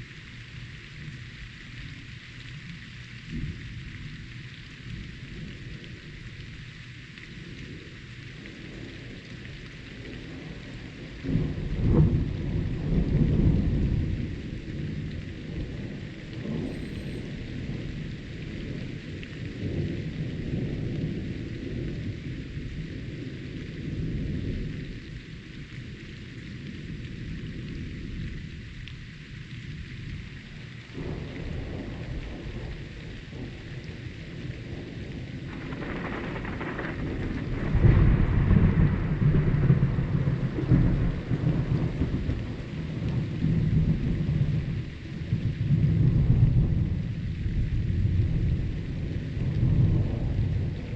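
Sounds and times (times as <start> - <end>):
steady rain: 0.0 - 50.9
thunder rumbling: 7.4 - 25.3, 31.0 - 50.9.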